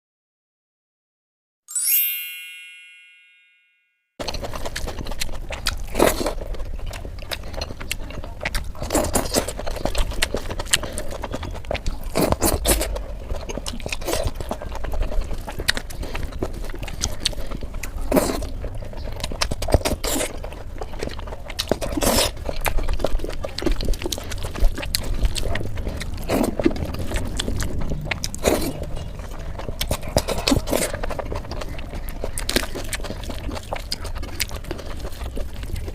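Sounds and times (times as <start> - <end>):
short ringing chime: 1.7 - 4.0
chewing and crunching food: 4.2 - 35.9.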